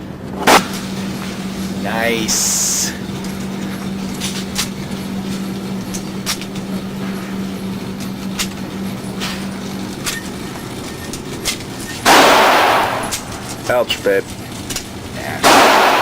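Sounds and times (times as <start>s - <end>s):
low hum of indoor range: 0.0s - 16.0s
faint gunshot cracks: 15.4s - 16.0s.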